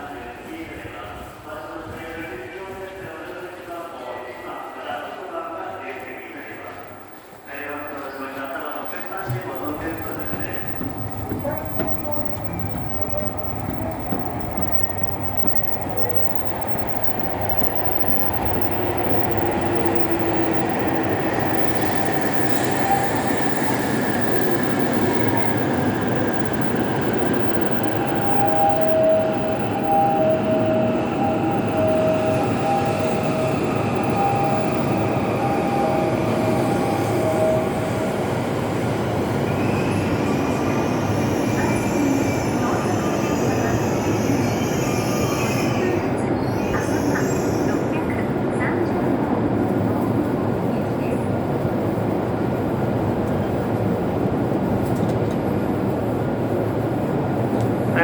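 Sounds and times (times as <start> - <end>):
train wheels rumbling: 0.0 - 58.0
train motor whine: 8.6 - 48.0.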